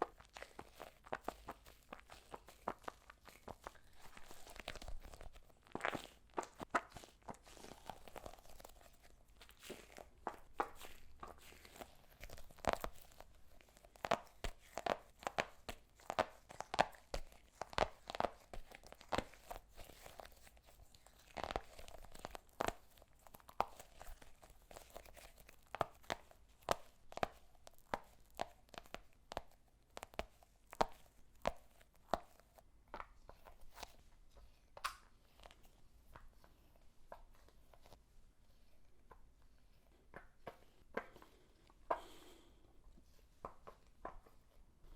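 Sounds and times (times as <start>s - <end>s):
slime popping and crackling: 0.0s - 34.0s.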